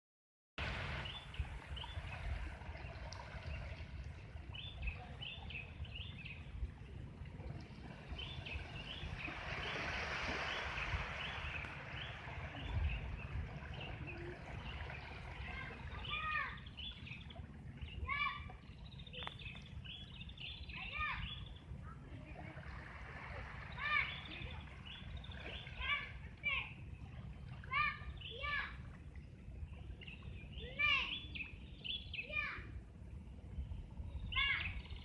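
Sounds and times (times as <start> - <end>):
low wind rumble: 0.6 - 35.0.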